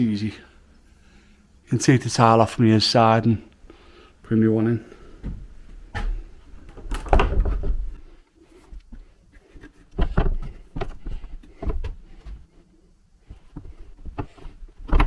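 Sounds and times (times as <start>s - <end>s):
wooden knocks and clatter: 5.2s - 8.1s, 8.7s - 12.6s, 13.2s - 15.0s.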